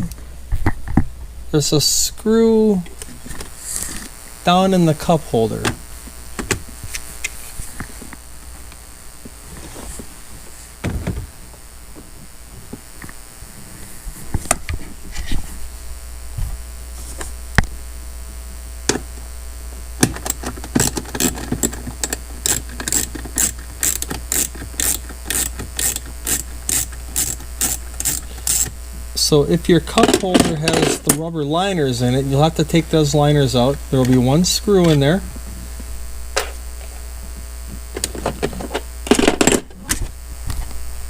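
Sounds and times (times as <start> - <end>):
ratcheting tool clicking: 20.2 - 28.7.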